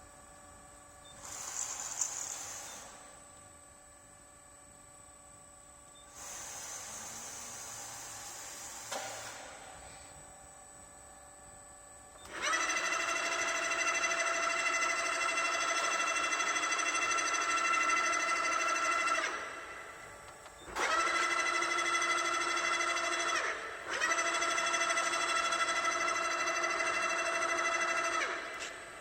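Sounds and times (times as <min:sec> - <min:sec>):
lathe drive whining: 0:12.2 - 0:29.0.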